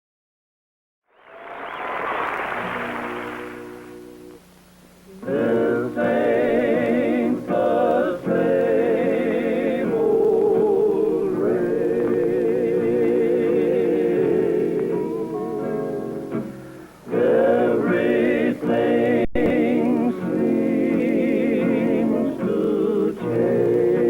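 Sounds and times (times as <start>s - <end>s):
vocal group singing close harmony: 5.1s - 16.3s, 17.1s - 24.0s.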